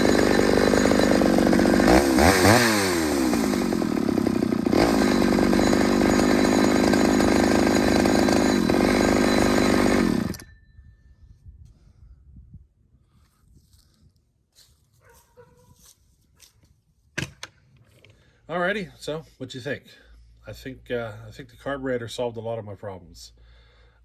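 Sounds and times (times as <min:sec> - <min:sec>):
chainsaw running at high revs: 0:00.0 - 0:10.5.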